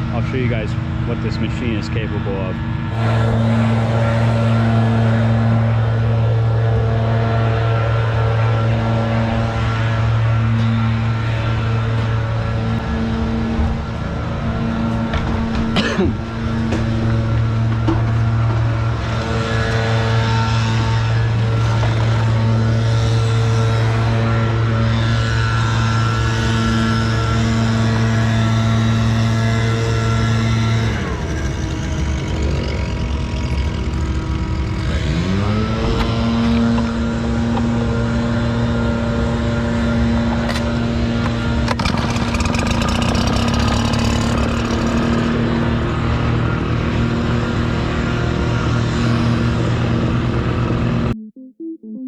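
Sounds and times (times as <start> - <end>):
small engine running steadily: 0.0 - 51.1.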